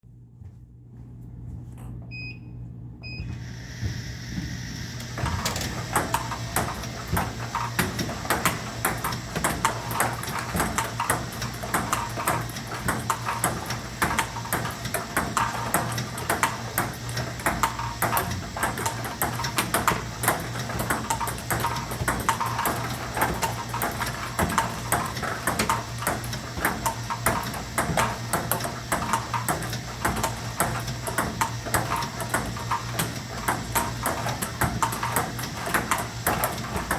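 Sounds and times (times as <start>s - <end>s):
ping-pong ball clicks: 6.0s - 32.8s.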